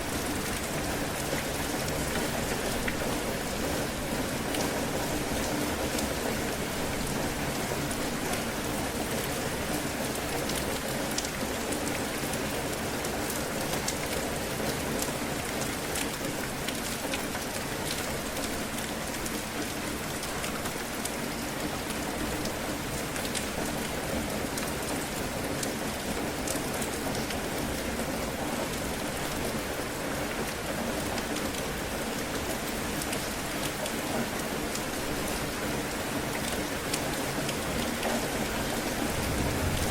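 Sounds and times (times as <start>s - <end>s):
raindrops ticking on a surface: 0.1s - 39.9s
heavy rain hissing: 38.8s - 39.9s.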